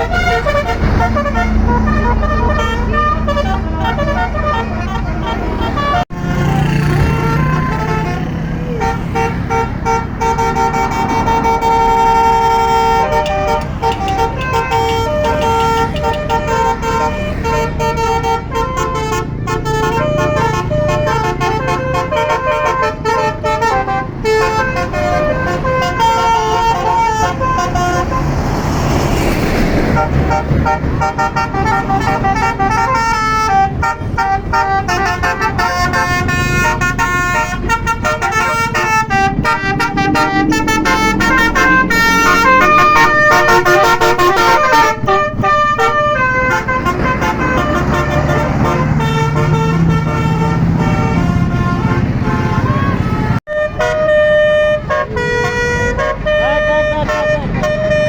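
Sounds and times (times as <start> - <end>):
bus engine rumble: 0.0 - 58.0
multi-tone bus horn tunes: 0.0 - 58.0
rushing noise: 37.3 - 45.3.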